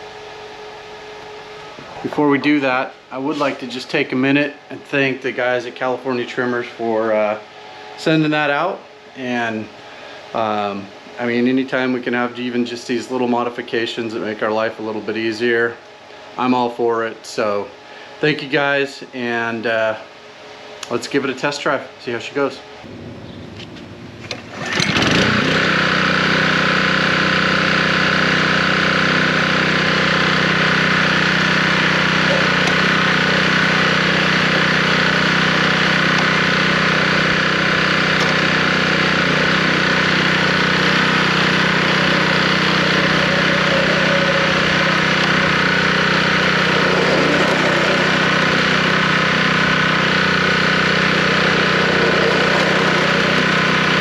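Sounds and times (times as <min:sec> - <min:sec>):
reel mower gas engine running: 0:24.2 - 0:54.0.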